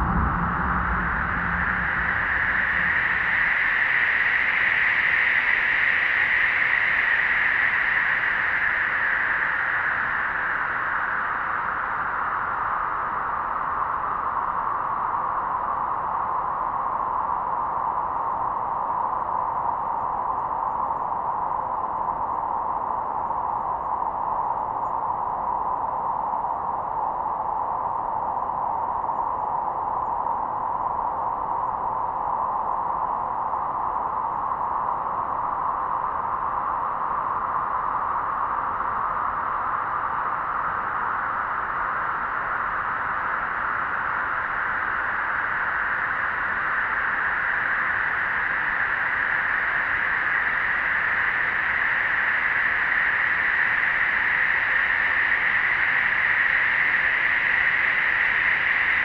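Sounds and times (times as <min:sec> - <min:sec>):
faint low tone: 0:00.0 - 0:03.6
storm wind whistling: 0:00.0 - 0:06.4.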